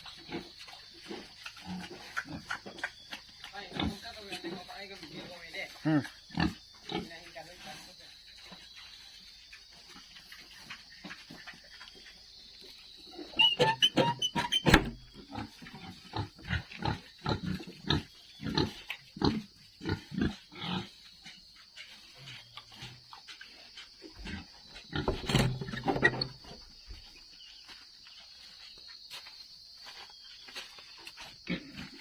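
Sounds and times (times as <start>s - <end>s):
pigs grunting: 0.0s - 8.6s, 13.0s - 26.4s, 31.4s - 32.0s.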